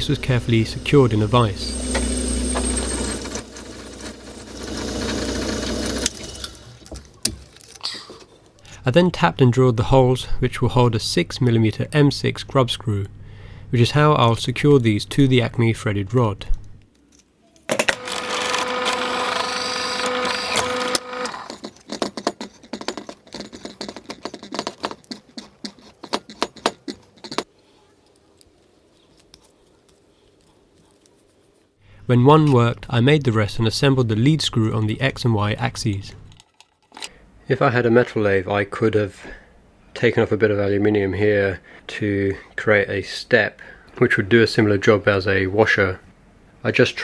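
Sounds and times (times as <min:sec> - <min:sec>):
lathe machine hum: 0:00.0 - 0:06.7, 0:18.0 - 0:21.5
electric drill drilling metal: 0:00.0 - 0:06.8, 0:17.7 - 0:21.6.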